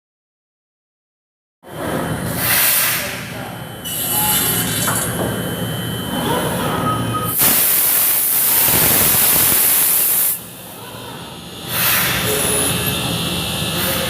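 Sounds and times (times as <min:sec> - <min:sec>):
woodworking machine running: 0:03.0 - 0:14.0
loud hiss: 0:07.4 - 0:10.4.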